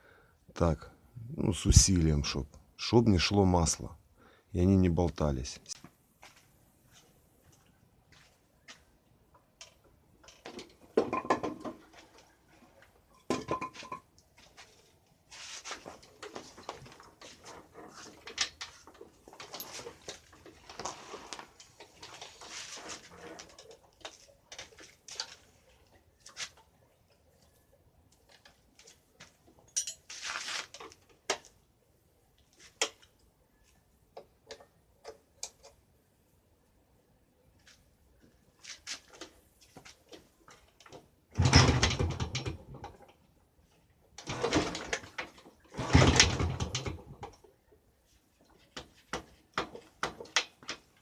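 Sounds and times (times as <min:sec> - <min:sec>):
soft scraping rustle: 0:05.6 - 0:09.0, 0:14.3 - 0:26.7, 0:28.6 - 0:31.0, 0:37.6 - 0:40.7
metal tools clinking: 0:29.6 - 0:30.4.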